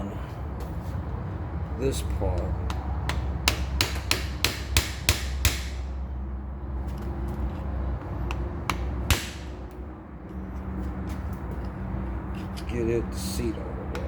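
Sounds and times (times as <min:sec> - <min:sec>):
hammer tapping on metal: 0:02.6 - 0:05.9, 0:08.2 - 0:09.5.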